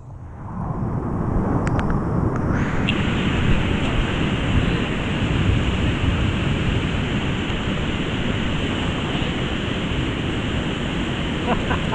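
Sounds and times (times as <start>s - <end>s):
whitewater rapids rushing: 2.6s - 11.9s.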